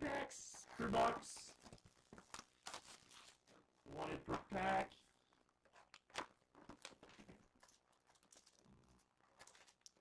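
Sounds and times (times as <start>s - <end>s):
packaging crinkling and rustling: 1.4s - 3.7s, 5.8s - 10.0s.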